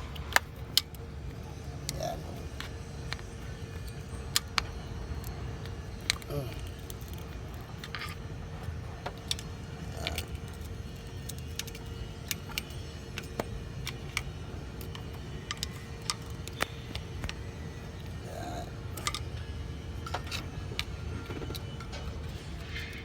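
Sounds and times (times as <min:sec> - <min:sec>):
faint hum: 0:00.0 - 0:23.0.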